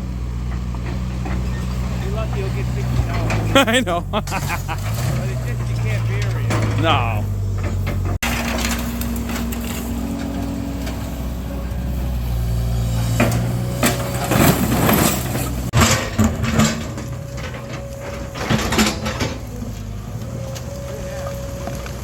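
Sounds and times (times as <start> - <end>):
excavator diesel engine running: 0.0 - 22.0
debris crunching and knocking: 13.1 - 22.0.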